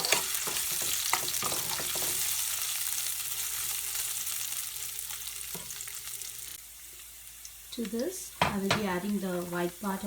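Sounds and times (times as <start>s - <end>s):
vegetables sizzling in hot oil: 0.0s - 10.0s.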